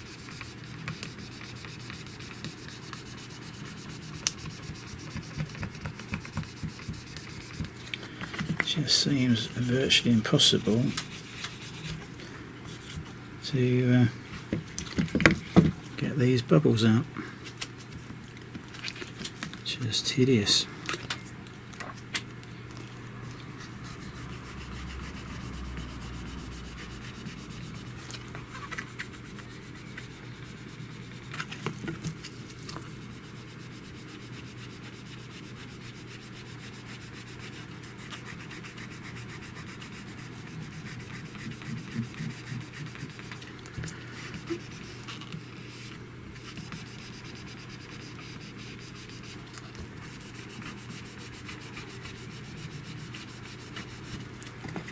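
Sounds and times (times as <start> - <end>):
rubbing on screen protector: 0.0 - 7.8, 8.7 - 12.1, 23.6 - 31.8, 32.4 - 54.3
steady low hum: 0.0 - 54.9.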